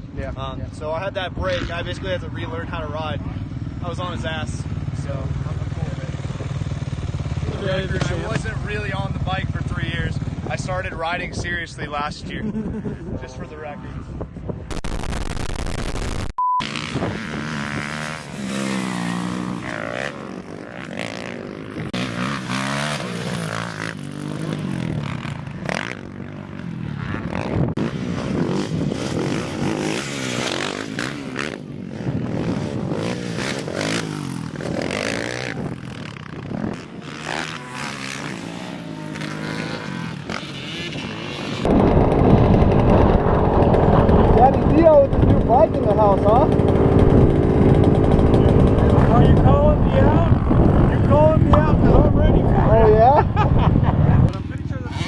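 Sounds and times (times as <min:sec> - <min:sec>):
dirt bike engines revving: 0:00.0 - 0:14.6, 0:16.6 - 0:55.0.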